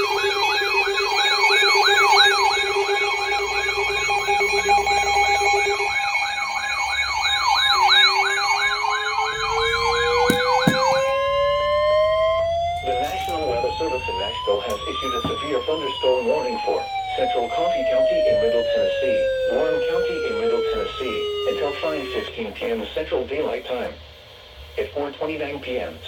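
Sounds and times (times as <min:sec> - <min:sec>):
siren tone climbing in pitch: 0:00.0 - 0:22.3
emergency siren yelping: 0:00.0 - 0:22.4
steady alert tones: 0:07.0 - 0:11.9.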